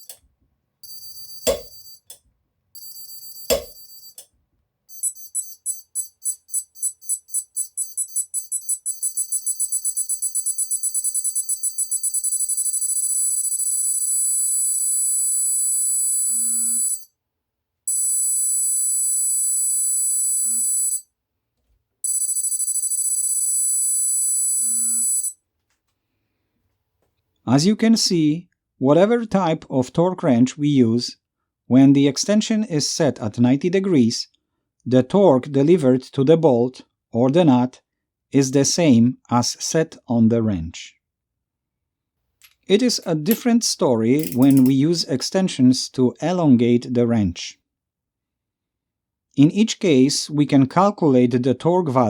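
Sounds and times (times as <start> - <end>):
torque wrench beeping: 0.0 - 0.2, 0.8 - 2.2, 2.8 - 4.2, 4.9 - 17.1, 17.9 - 21.0, 22.0 - 25.3, 44.2 - 44.7
sharp clicks: 1.4 - 2.2, 44.2 - 44.7.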